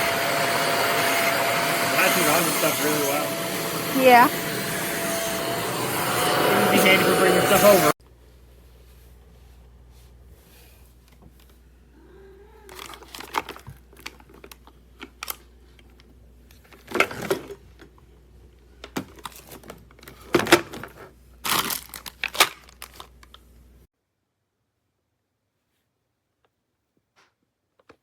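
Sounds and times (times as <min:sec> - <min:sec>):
crinkling and rustling: 0:12.7 - 0:18.0, 0:18.8 - 0:23.5.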